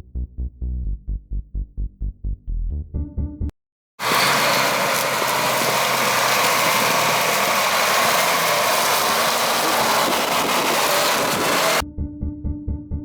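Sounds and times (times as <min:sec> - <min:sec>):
heavy machinery running: 0:04.0 - 0:11.8
low engine hum: 0:04.0 - 0:11.8.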